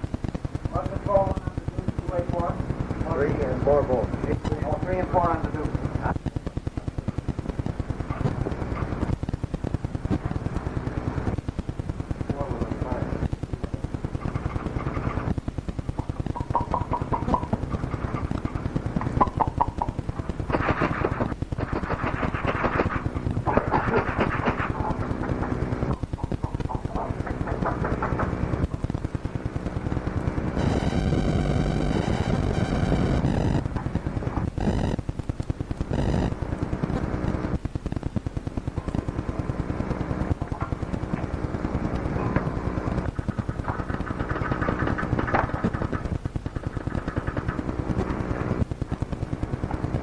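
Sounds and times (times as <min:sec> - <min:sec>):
machine clicking rapidly: 0:00.0 - 0:50.0
short buzzing tones: 0:27.8 - 0:37.6.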